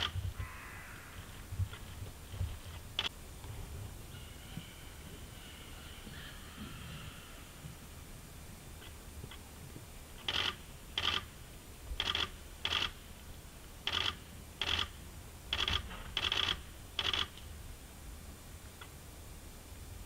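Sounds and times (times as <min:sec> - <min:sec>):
camera lens motor buzzing: 0:10.2 - 0:11.3, 0:12.0 - 0:13.0, 0:13.9 - 0:14.9, 0:15.5 - 0:17.4.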